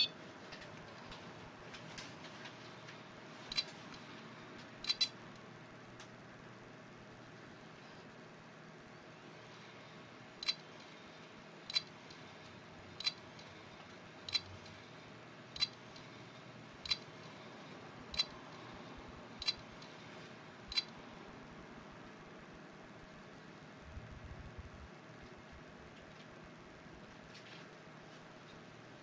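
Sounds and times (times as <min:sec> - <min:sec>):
hard drive clicking: 0:00.0 - 0:06.7, 0:10.3 - 0:11.0, 0:11.6 - 0:14.8, 0:15.5 - 0:21.1
faint hard drive whir: 0:00.0 - 0:29.0.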